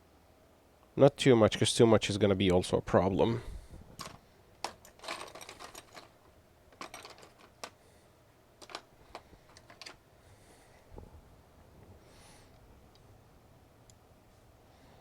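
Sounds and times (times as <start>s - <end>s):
small tools clicking on desk: 6.8s - 7.8s, 8.6s - 10.0s.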